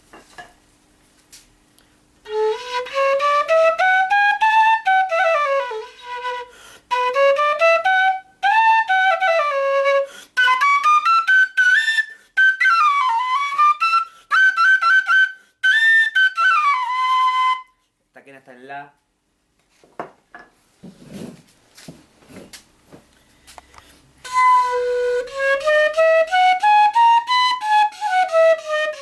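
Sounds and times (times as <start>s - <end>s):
quena flute melody: 2.2s - 17.9s, 24.2s - 29.0s.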